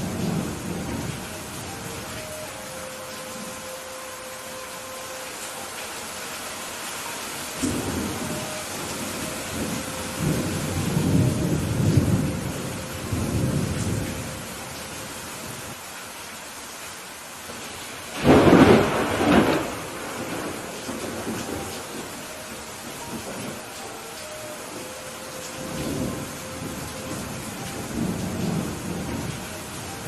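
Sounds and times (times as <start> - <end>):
heavy rain: 0.0 - 30.0
thunder rumbling: 7.5 - 15.7, 18.1 - 30.0.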